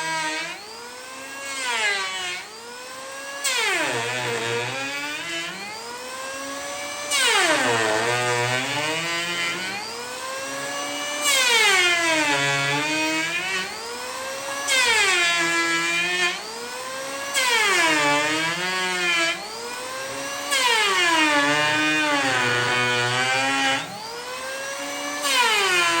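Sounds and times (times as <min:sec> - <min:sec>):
angle grinder grinding metal: 0:00.0 - 0:26.0.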